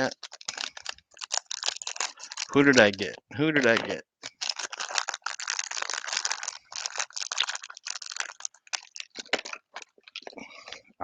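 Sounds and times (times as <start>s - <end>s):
wrapper crinkling and tearing: 0.0s - 10.8s.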